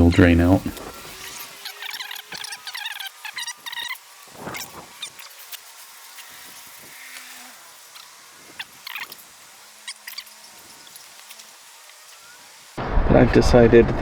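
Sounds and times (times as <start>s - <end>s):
quick high-pitched chirping: 1.2s - 5.4s.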